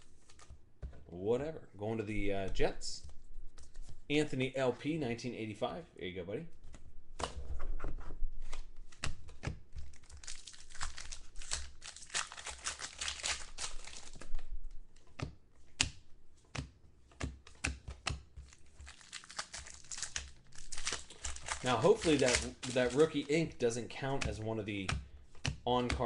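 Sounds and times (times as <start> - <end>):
card pack wrappers tearing and crinkling: 9.9 - 14.3, 18.4 - 23.5.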